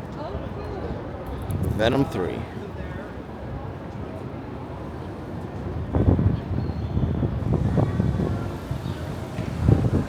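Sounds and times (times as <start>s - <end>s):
street noise: 0.0s - 10.0s
wind buffeting microphone: 5.6s - 10.0s.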